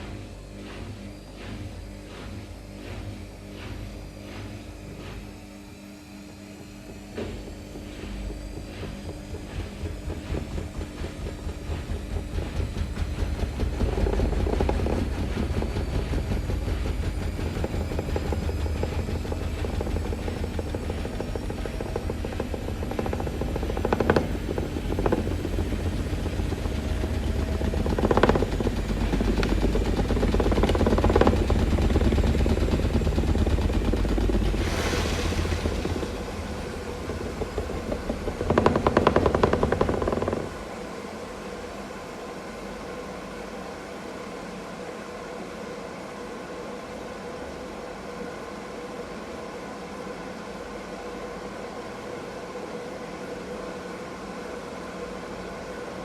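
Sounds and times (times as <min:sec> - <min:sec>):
washing machine drum throbbing: 0:00.0 - 0:46.2
faint motor whine: 0:00.0 - 0:56.0
sharp knocks: 0:07.0 - 0:40.7.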